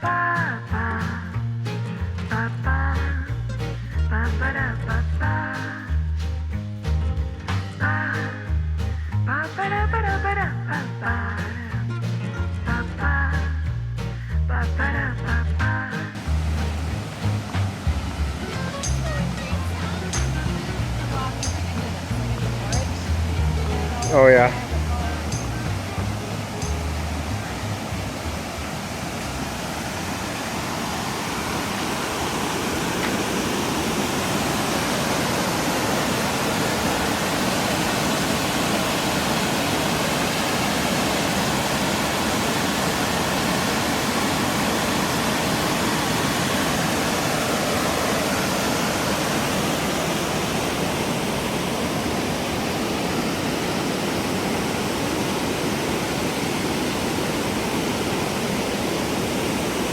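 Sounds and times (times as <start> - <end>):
waterfall rushing: 16.1 - 59.9.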